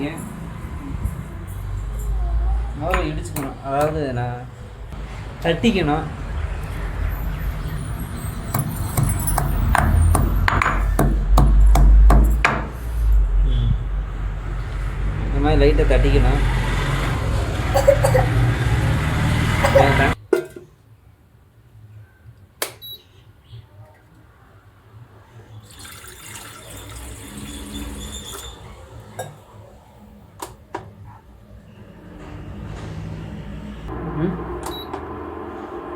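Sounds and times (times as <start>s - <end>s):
water pouring into a pot: 25.6s - 28.6s.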